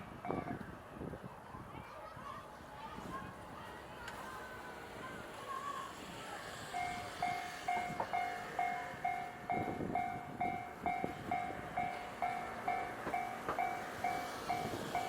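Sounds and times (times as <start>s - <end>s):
level-crossing warning bell: 6.7s - 15.0s.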